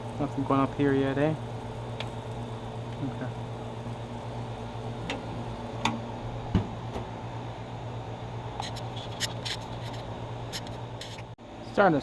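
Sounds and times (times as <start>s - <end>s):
sausages sizzling on a grill: 0.0s - 6.4s
low hum: 0.0s - 11.6s.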